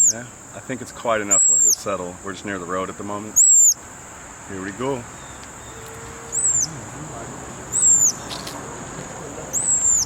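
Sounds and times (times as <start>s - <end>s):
monkey high-pitched peeps: 0.0s - 0.2s, 1.3s - 1.9s, 3.3s - 3.8s, 5.2s - 7.0s, 7.7s - 8.5s, 9.5s - 10.0s
high insect drone: 0.0s - 10.0s.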